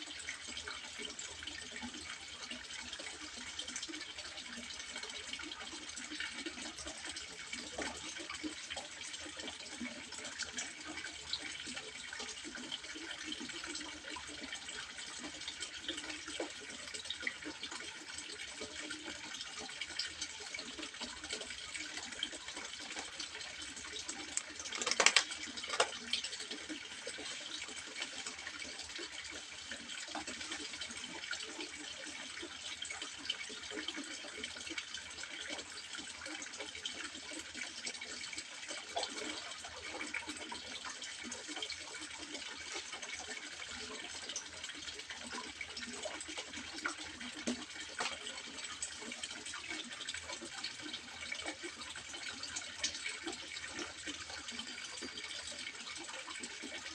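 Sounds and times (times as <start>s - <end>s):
water trickling into a pond: 0.0s - 56.9s
water splashes: 21.2s - 30.9s.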